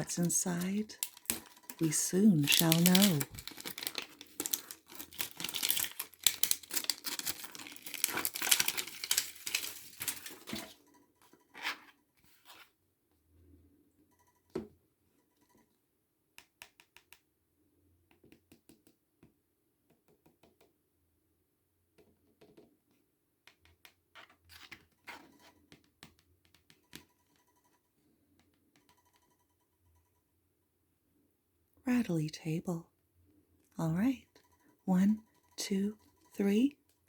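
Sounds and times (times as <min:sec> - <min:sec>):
packaging torn and crinkled: 0:00.0 - 0:10.6.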